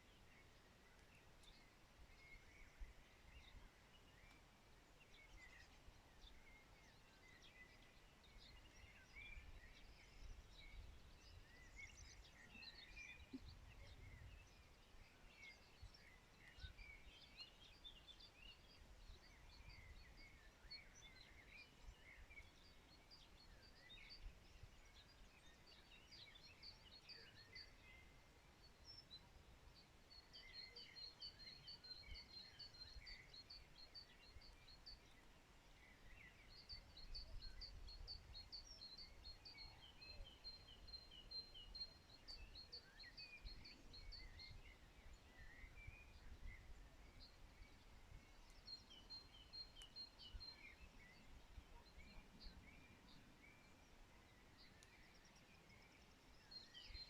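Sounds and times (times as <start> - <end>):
small songbirds chirping: 0.0 - 57.0.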